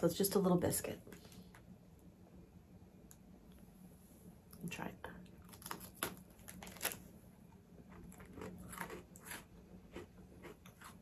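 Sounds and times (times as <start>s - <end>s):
biscuit crunching being chewed: 5.3s - 7.0s, 7.8s - 11.0s.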